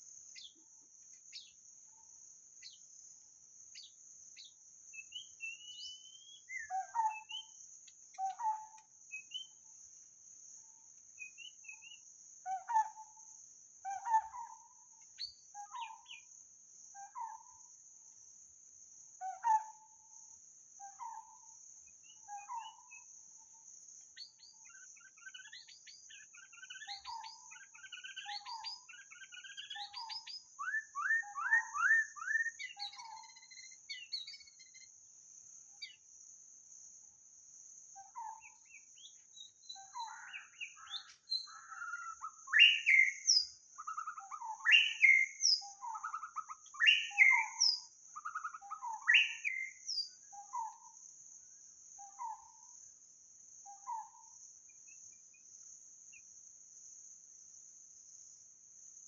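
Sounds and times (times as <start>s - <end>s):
high insect hum: 0.0s - 59.0s
bird singing whistled phrases: 5.1s - 7.6s, 26.5s - 34.8s, 39.0s - 50.8s.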